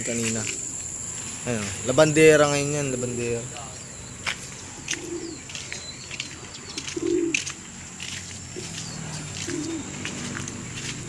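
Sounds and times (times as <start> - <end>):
pigeons cooing: 4.5 - 10.9.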